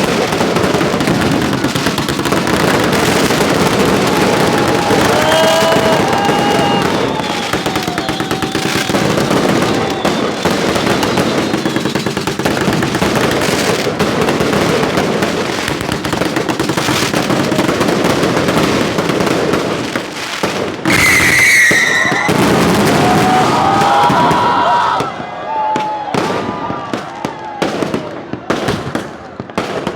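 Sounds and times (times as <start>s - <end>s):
fireworks crackling and popping: 0.0s - 29.9s
high whistling tone: 20.9s - 22.3s.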